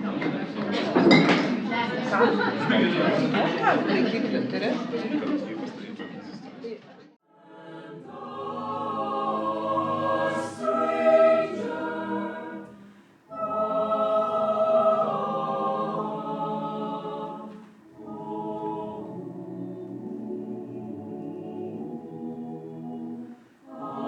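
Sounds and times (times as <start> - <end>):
choir singing held chords: 7.3 - 24.0.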